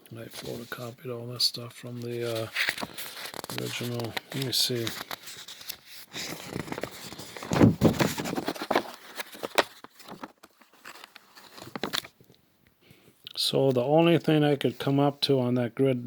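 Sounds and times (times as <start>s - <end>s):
paper rustling: 0.3s - 1.0s, 1.6s - 12.2s.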